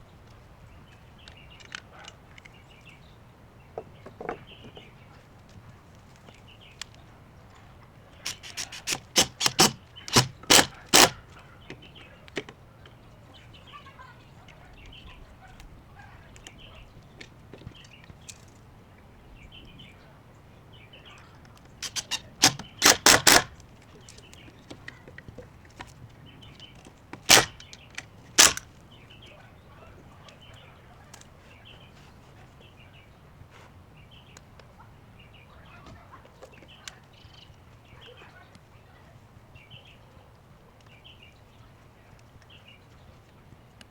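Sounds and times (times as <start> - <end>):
birds chirping faintly: 0.0 - 43.9
sharp knocks: 8.3 - 11.2, 21.8 - 23.5.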